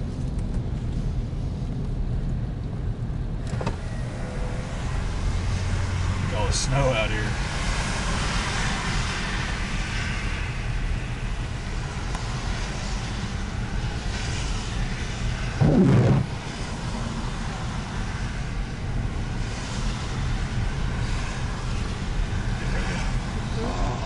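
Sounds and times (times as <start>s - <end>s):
car driving rumble inside cabin: 10.8s - 24.0s.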